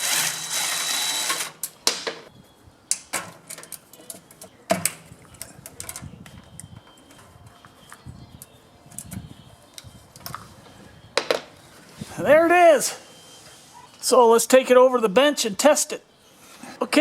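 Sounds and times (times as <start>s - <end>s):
power drill running: 0.0s - 1.6s.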